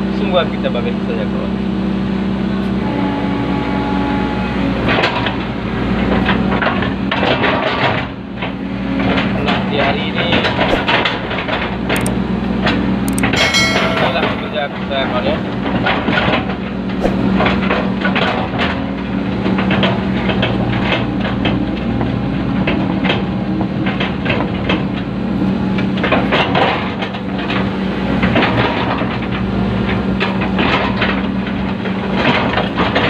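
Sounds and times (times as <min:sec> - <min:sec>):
excavator diesel engine running: 0:00.0 - 0:33.0
machine clanks and rattles: 0:06.1 - 0:16.7, 0:17.4 - 0:25.1, 0:25.8 - 0:33.0.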